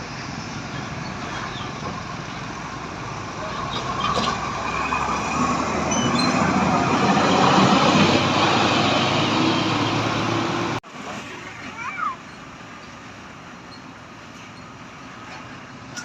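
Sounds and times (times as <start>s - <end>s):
bus passing by: 0.0s - 15.9s.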